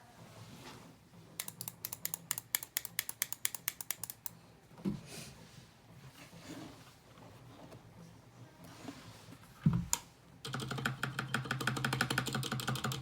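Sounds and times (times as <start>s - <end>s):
mechanical keyboard typing: 1.4s - 4.3s, 10.5s - 13.0s.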